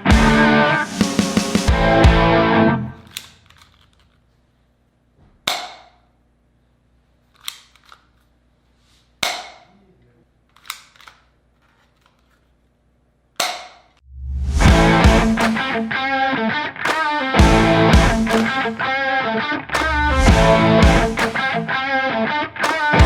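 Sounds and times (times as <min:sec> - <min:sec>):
pistol cocking clicks: 0:03.0 - 0:04.2.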